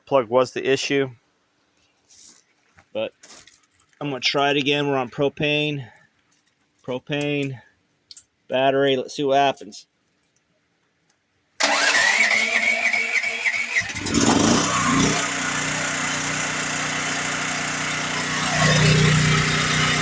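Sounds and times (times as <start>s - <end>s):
generator engine running: 11.6s - 20.0s
starter motor cranking: 11.6s - 20.0s.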